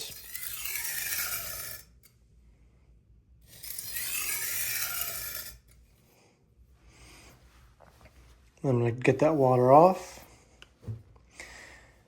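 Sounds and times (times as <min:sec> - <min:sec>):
knife scraping on sharpening stone: 0:00.0 - 0:02.1, 0:03.5 - 0:05.8.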